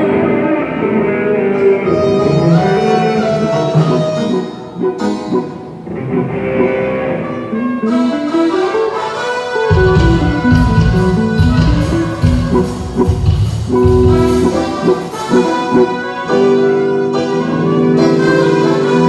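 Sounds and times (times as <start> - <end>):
live band playing: 0.0 - 19.0.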